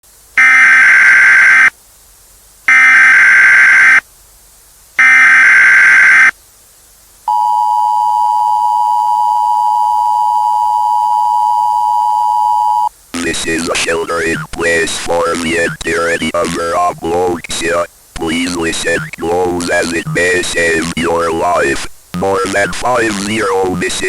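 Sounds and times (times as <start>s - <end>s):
digital data bursts: 13.2s - 24.0s.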